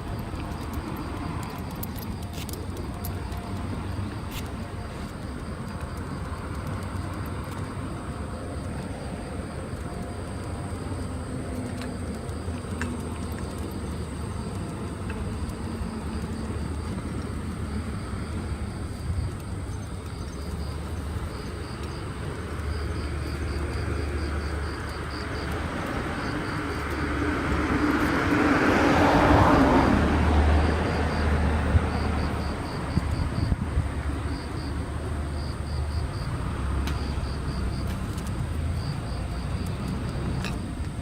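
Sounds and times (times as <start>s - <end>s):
outdoor rumble: 0.0s - 41.0s
vehicle passing: 20.6s - 40.5s.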